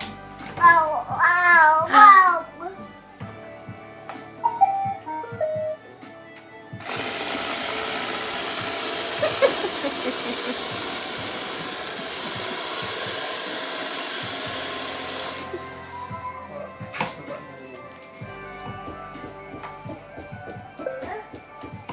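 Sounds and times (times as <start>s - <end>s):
robot vacuum motors whirring: 6.8s - 15.6s.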